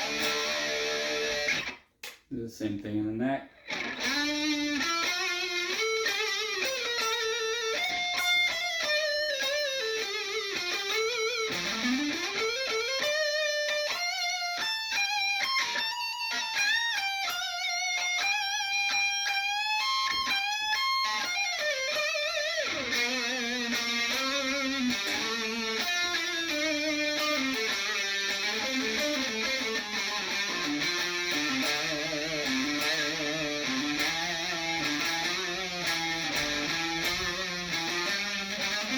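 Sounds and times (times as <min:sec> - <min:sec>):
electric guitar lead lines: 0:00.0 - 0:01.8, 0:03.6 - 0:38.9.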